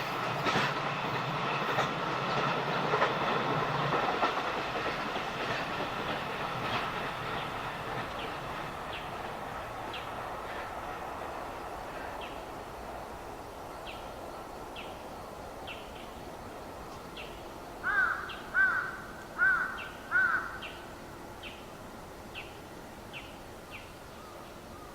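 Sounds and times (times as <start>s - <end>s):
passing train: 0.0s - 24.9s
crow cawing: 17.8s - 20.6s.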